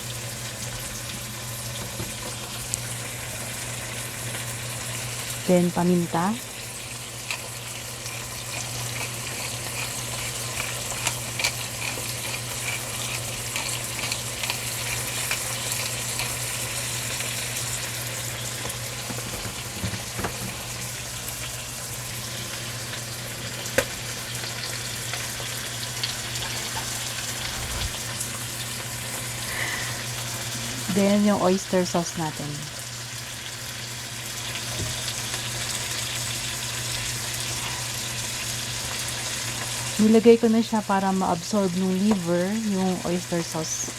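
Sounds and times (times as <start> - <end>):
liver sizzling in a pan: 0.0 - 43.9.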